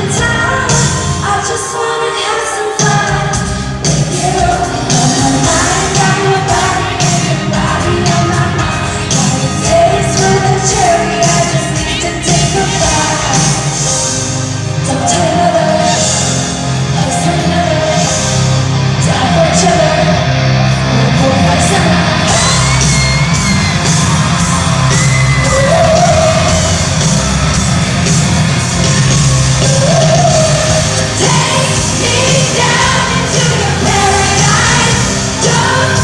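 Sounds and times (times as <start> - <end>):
band playing live: 0.0 - 36.0
crowd yelling and whooping: 15.2 - 36.0.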